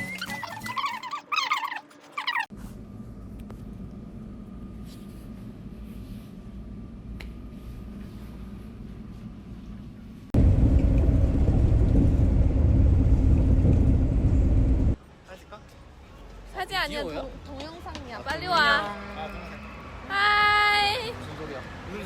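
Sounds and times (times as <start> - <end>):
vehicle rumble: 2.5 - 15.0.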